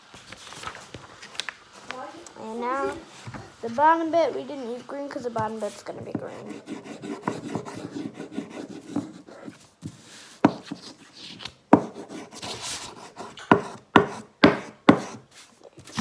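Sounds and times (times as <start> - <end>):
chalk scraping across paper: 5.4 - 16.0.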